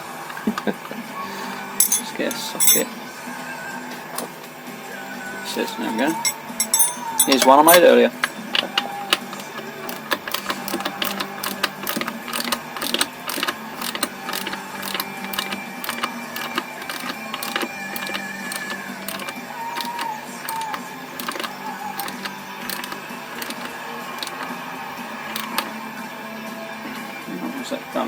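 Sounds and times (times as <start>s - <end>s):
socket ratchet clicking: 1.8s - 2.8s, 6.0s - 24.6s, 25.3s - 25.8s.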